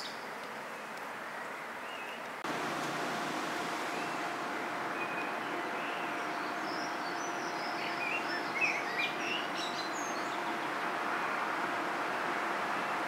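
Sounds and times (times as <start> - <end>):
faint constant hum: 0.1 - 13.0
steady background rumble: 2.5 - 13.0
small birds chirping: 3.8 - 13.0.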